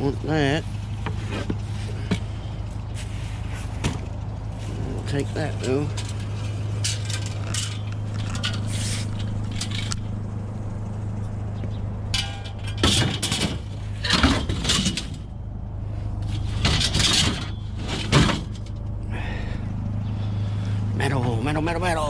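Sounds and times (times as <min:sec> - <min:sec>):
vehicle idling: 0:00.0 - 0:22.0
scrap metal clanking: 0:00.7 - 0:10.1, 0:12.1 - 0:15.3, 0:16.2 - 0:18.9.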